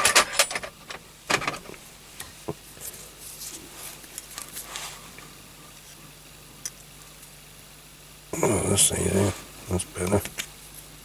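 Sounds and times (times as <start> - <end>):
faint rustles: 2.8 - 6.1.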